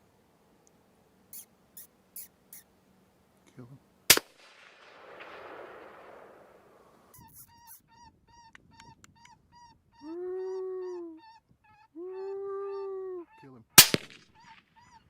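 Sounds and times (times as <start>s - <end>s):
coyote whining: 1.3s - 2.7s, 7.1s - 15.0s
coyote yipping: 1.3s - 2.7s, 7.1s - 15.0s
rifle shot echo: 4.1s - 7.1s, 13.8s - 14.3s.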